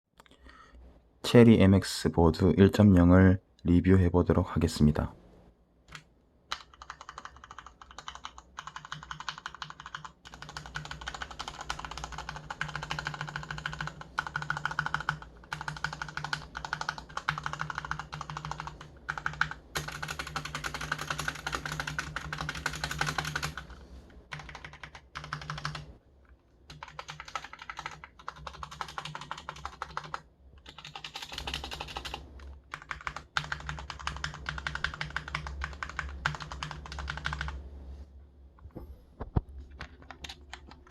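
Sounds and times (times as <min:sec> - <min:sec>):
mechanical keyboard typing: 0:05.9 - 0:25.9, 0:26.7 - 0:37.6, 0:39.8 - 0:40.9.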